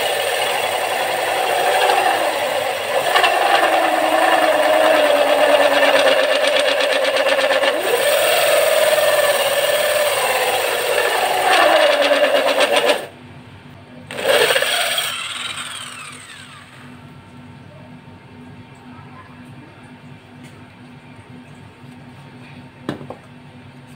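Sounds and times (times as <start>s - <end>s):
power drill cutting wood: 0.0s - 13.1s, 14.1s - 16.9s.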